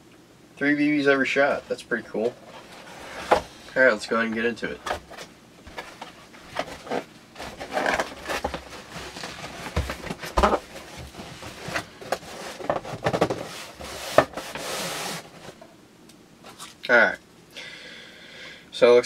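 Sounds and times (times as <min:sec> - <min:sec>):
cardboard packaging rustling: 0:01.6 - 0:15.6.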